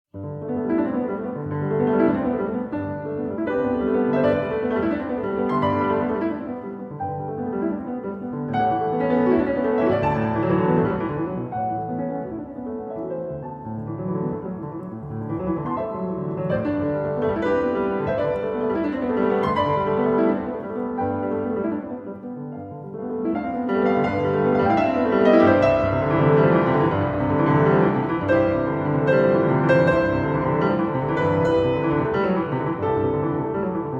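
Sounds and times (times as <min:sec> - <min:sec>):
slow solo piano piece: 0:00.2 - 0:33.9.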